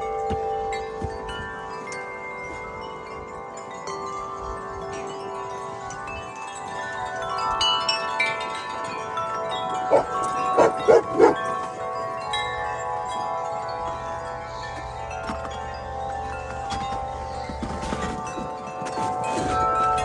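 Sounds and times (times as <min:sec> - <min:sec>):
wind chimes ringing: 0:00.0 - 0:20.0
dog barking: 0:09.9 - 0:11.4.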